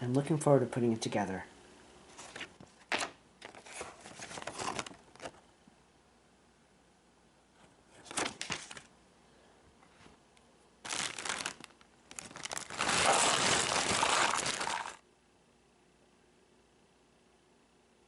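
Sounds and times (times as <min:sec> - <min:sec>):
plastic packaging crinkling: 0:02.4 - 0:05.4, 0:10.8 - 0:15.0.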